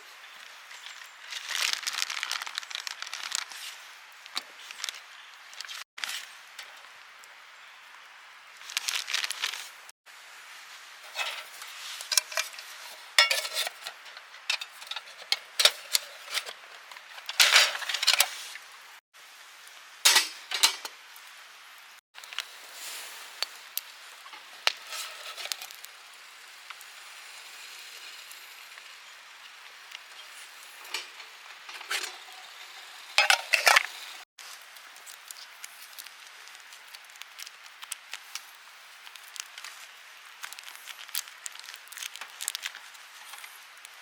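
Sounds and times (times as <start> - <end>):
crinkling and rustling: 0.9 - 6.8, 8.6 - 9.9, 11.0 - 18.7, 22.2 - 25.9, 29.7 - 32.6, 33.2 - 44.0
metal mess tin and utensils clinking: 11.0 - 18.5, 20.1 - 21.0, 24.3 - 25.8, 30.8 - 34.1.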